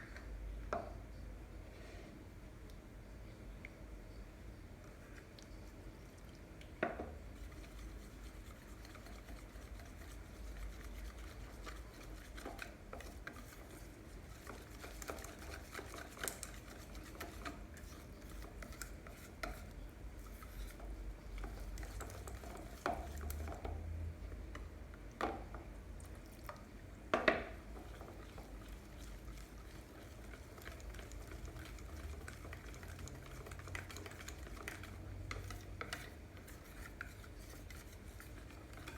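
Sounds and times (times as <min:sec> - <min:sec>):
utensil scraping and clinking bowl: 0:07.4 - 0:23.9, 0:27.2 - 0:38.9.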